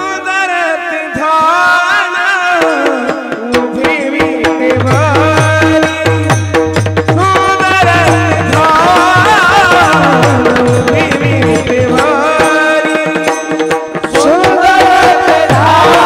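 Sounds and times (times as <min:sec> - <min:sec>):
man singing: 0:00.0 - 0:16.0
hand drum strokes: 0:06.2 - 0:14.8
steady held notes: 0:06.4 - 0:14.1.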